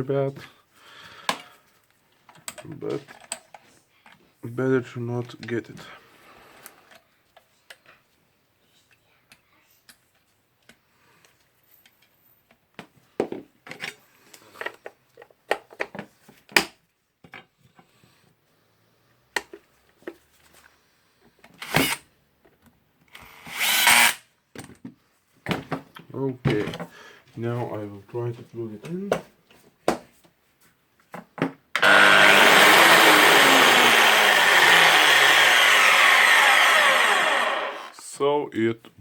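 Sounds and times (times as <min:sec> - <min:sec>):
plastic parts clicking and knocking: 0:14.6 - 0:17.5.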